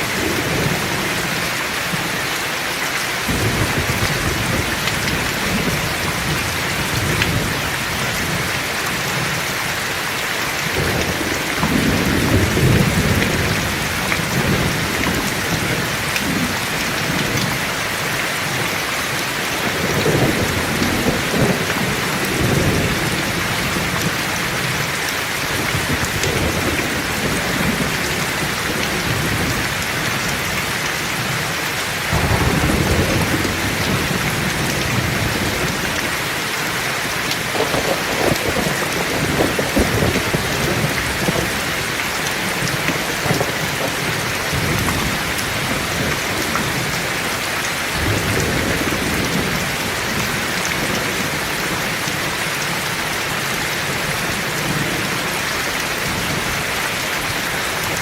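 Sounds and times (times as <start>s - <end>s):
heavy rain: 0.0s - 58.0s
rolling thunder: 3.3s - 9.0s, 10.7s - 17.8s, 18.5s - 24.8s, 32.0s - 47.0s.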